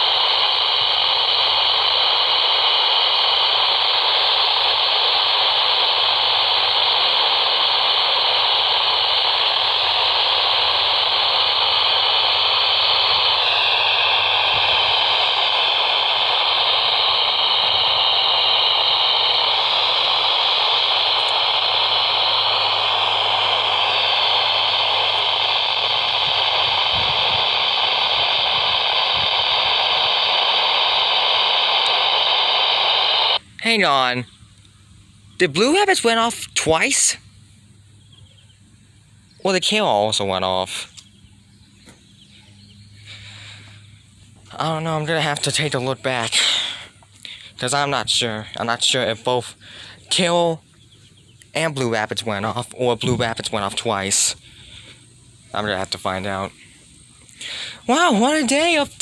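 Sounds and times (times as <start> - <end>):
radio static hiss: 0.0 - 34.3, 35.4 - 37.3, 38.7 - 41.0, 42.3 - 50.7, 51.3 - 59.0
faint whistle in static: 35.3 - 46.2.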